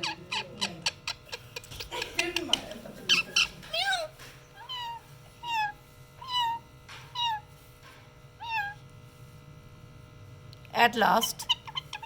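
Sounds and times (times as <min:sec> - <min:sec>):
parrot mimicking cat meow: 0:03.1 - 0:07.4, 0:08.4 - 0:08.8.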